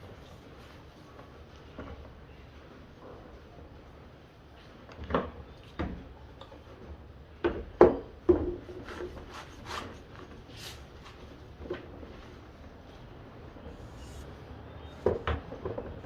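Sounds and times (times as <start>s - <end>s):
sandpaper rubbing on wood: 8.9s - 10.9s.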